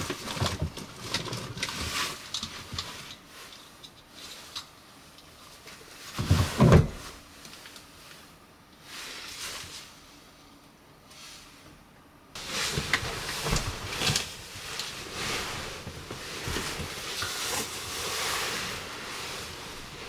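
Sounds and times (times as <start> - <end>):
rain hissing: 12.4 - 20.0.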